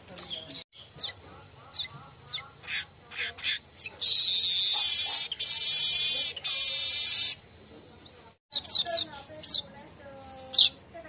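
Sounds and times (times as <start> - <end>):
bird sharp chirps: 0.2 - 7.4, 8.0 - 11.0
bird buzzy sizzling trill: 0.8 - 7.5.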